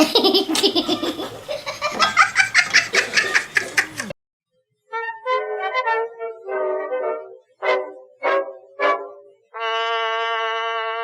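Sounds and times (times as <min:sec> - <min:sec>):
person laughing hard: 0:00.0 - 0:04.1
brass-like tune: 0:04.9 - 0:11.0.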